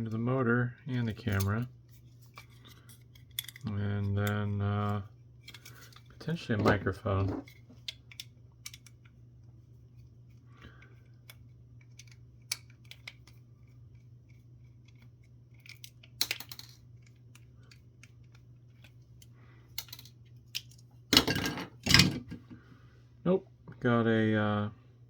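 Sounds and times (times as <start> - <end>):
clicks of small parts handled: 1.0 - 9.2, 10.8 - 22.4.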